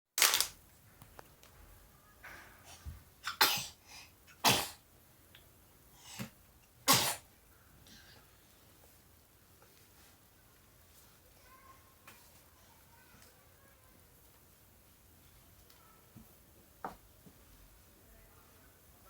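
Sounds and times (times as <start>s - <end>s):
person sneezing: 6.9s - 7.2s.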